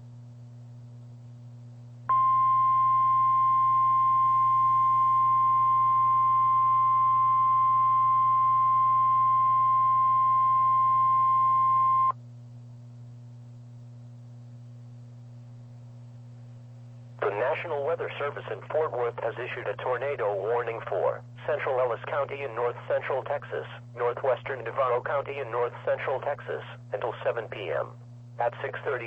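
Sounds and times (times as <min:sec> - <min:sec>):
steady high alarm tone: 0:02.1 - 0:12.1.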